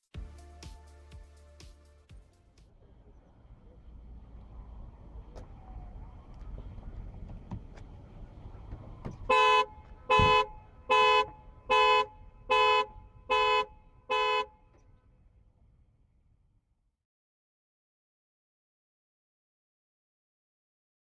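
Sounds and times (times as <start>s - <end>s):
two-tone car horn blasts: 8.9s - 14.8s.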